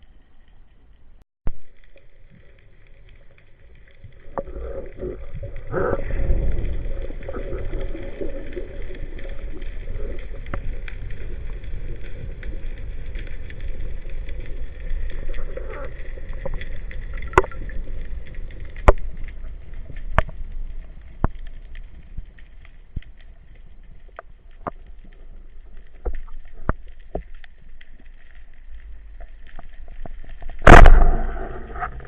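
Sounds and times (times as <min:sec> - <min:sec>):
steady low rumbling: 0:30.6 - 0:32.0.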